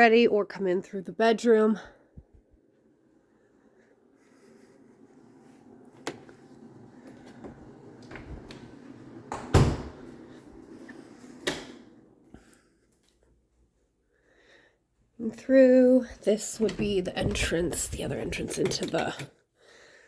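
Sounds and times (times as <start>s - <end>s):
low rumble of movement: 2.2s - 12.5s
door knocks and clicks: 9.2s - 10.1s.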